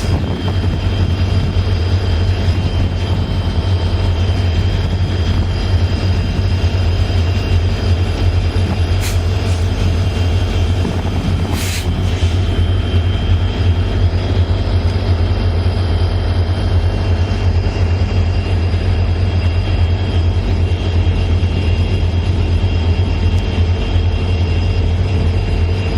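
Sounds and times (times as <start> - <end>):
freight train rumbling: 0.0 - 25.9.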